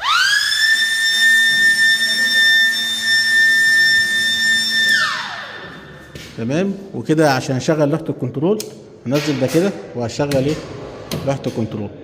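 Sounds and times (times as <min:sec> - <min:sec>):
alarm siren steady high tone: 0:00.0 - 0:06.2.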